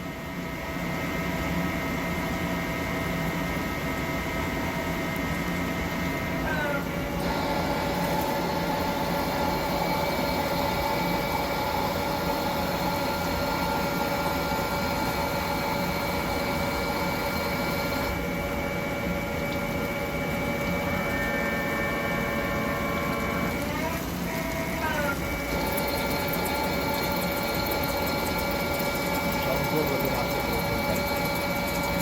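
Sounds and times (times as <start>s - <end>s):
lathe spindle whine: 5.7s - 32.0s.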